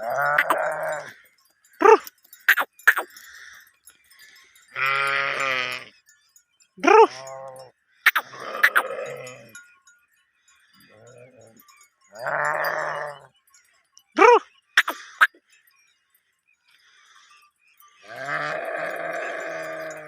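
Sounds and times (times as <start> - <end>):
sheep bleating: 0.0 - 1.2, 4.8 - 5.9, 7.0 - 9.6, 12.2 - 13.3, 18.1 - 20.0.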